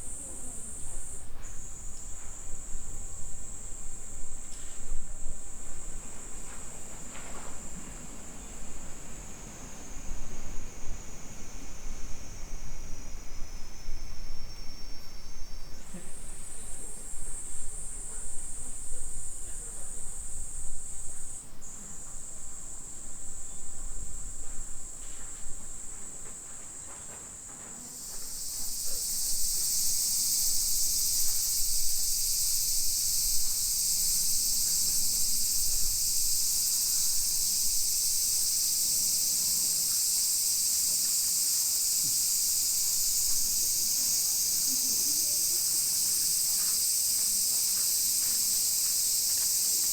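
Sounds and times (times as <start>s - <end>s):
insects chirring: 0.0s - 49.9s
loud insect buzzing: 28.0s - 49.9s.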